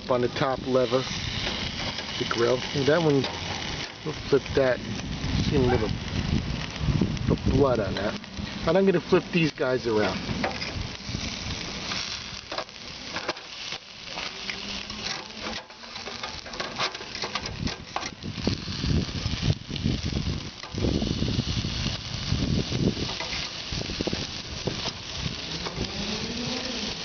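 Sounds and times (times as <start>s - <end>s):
chicken sizzling on a grill: 0.0s - 27.0s
clicks and knocks of turning food: 11.9s - 18.4s.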